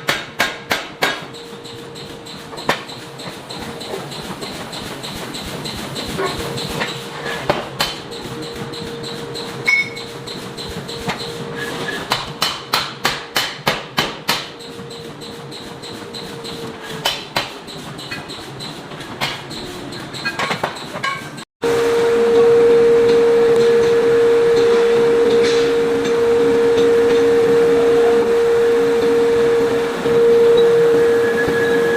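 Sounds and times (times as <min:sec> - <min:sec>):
power hammer striking hot metal: 0:00.0 - 0:18.4, 0:22.4 - 0:30.7
machine hum: 0:01.3 - 0:12.5, 0:21.6 - 0:31.9.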